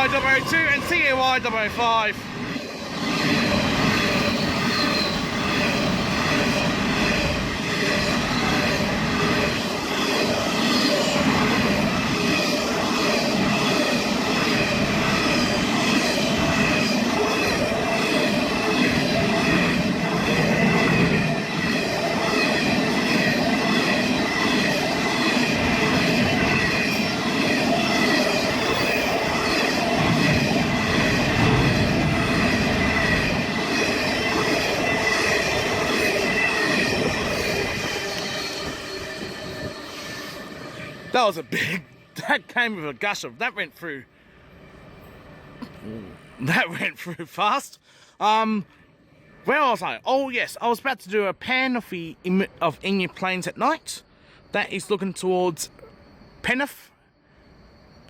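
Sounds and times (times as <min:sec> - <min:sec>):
freight train wagons rattling: 0:00.0 - 0:44.0
high-pitched wheel squeal: 0:02.7 - 0:08.8, 0:18.3 - 0:41.4.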